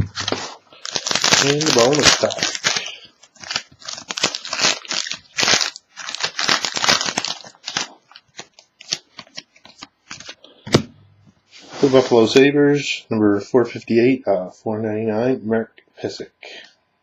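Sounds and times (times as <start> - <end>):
foil wrapper crinkling: 0.0 - 10.4.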